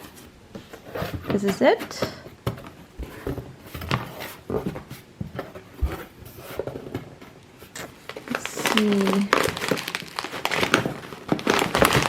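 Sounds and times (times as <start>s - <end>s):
cardboard box rustling: 0.0s - 12.0s.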